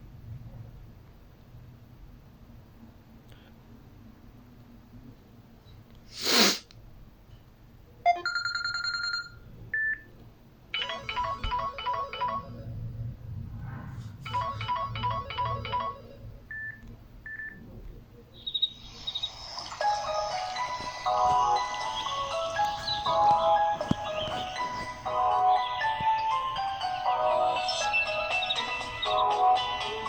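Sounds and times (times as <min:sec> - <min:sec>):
repeating ringtone melody: 0:08.1 - 0:09.3, 0:10.8 - 0:12.8, 0:14.3 - 0:16.3, 0:18.9 - 0:30.0.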